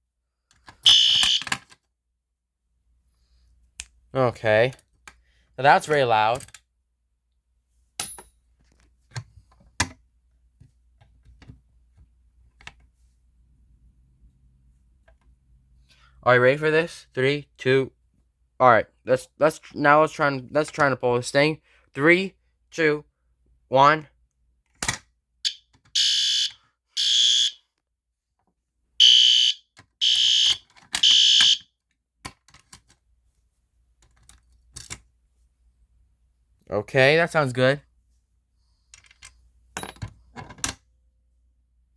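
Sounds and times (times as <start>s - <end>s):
fire alarm horn blasts: 0.8s - 1.5s, 25.4s - 27.7s, 29.0s - 31.7s.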